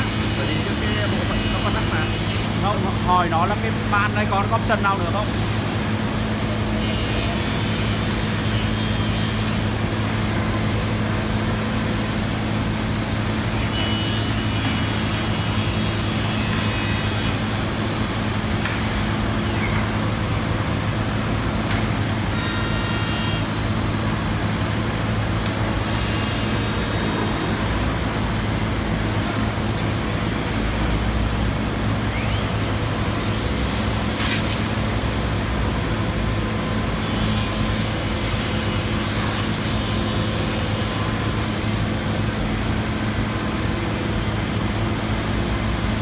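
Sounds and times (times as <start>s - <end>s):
high thin whine: 0.0s - 11.0s.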